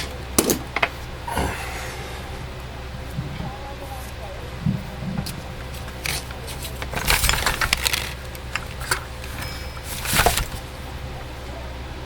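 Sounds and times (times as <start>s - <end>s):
metal tools clinking and rattling: 5.7s - 11.0s.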